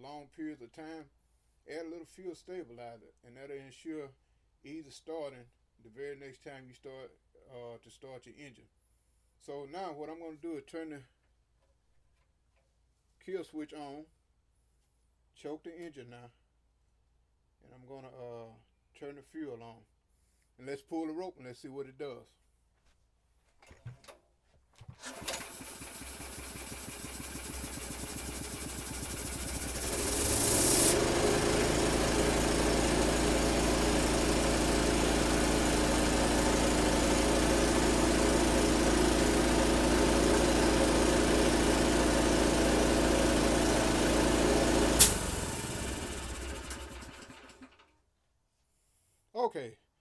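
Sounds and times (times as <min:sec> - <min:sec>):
small engine pull-started and running: 0:24.8 - 0:48.0.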